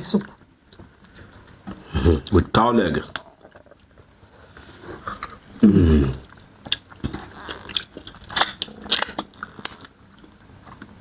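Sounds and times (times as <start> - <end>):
short low vocal sound: 5.6 - 6.3
close chewing and biting: 6.2 - 11.0.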